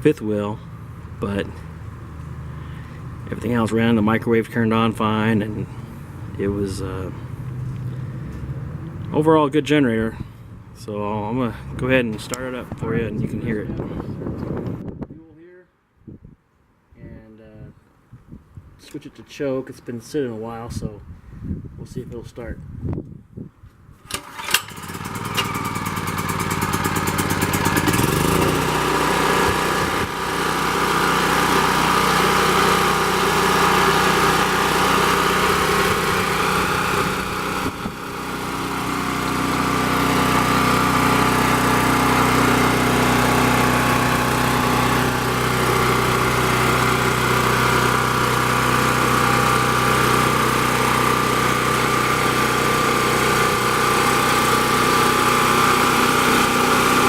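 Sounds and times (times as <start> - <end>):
portable generator engine running: 0.5 - 9.3, 10.0 - 14.4, 24.1 - 57.0.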